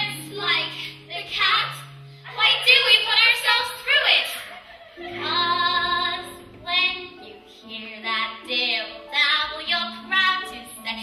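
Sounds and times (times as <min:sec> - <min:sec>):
children singing: 0:04.5 - 0:06.4.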